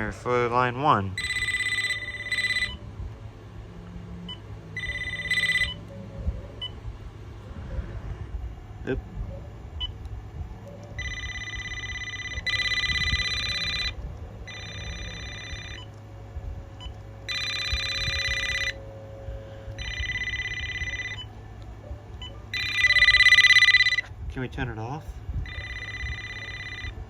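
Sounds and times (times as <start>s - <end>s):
cordless phone ringing: 1.2s - 2.8s, 4.3s - 6.0s, 11.0s - 16.0s, 16.8s - 18.9s, 19.6s - 21.4s, 22.2s - 24.1s, 25.4s - 27.0s.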